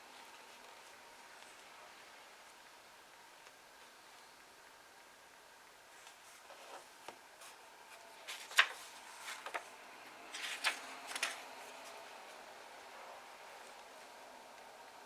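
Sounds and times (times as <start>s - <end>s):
book pages turning: 6.0s - 12.0s.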